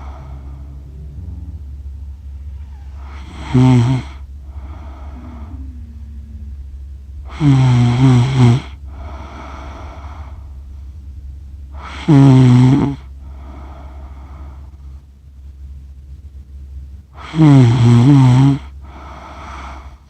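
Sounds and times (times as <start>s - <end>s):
breathy breath: 0.0s - 0.8s, 2.2s - 11.0s, 11.8s - 15.1s, 17.2s - 20.0s
person snoring: 2.6s - 10.4s, 11.8s - 14.6s, 17.2s - 20.0s.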